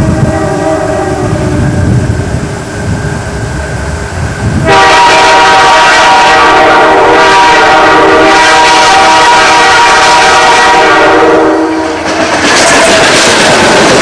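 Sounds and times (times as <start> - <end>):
faint train horn: 0.0 - 1.9, 4.6 - 12.0
loud locomotive horn blast: 0.0 - 2.0, 4.5 - 12.0
diesel locomotives rumbling: 0.0 - 14.0.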